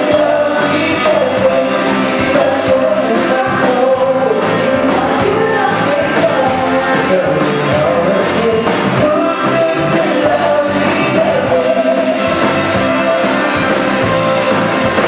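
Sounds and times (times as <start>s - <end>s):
live band playing with singer: 0.0s - 15.0s.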